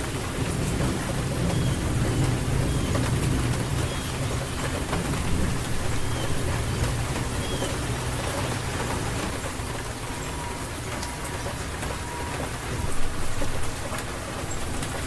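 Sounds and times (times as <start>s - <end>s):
steady rain falling: 0.0s - 15.0s
bird chirps: 5.9s - 7.9s.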